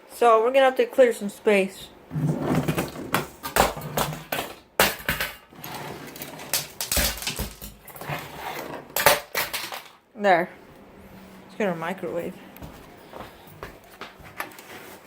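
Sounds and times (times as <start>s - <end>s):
objects knocking and clattering: 2.1s - 10.0s.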